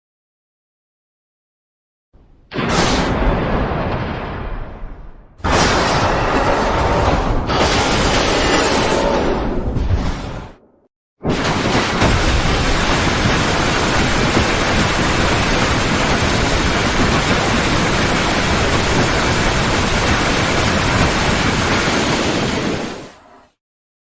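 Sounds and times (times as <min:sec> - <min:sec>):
loud steady rushing noise: 0:11.3 - 0:23.1.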